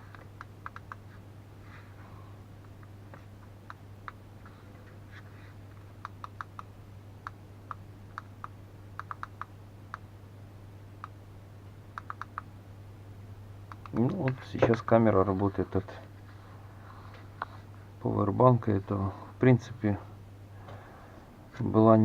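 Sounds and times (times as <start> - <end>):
steady low hum: 0.0 - 22.0
light irregular clicks: 0.1 - 1.0, 6.0 - 10.1, 12.0 - 12.5, 13.7 - 14.9.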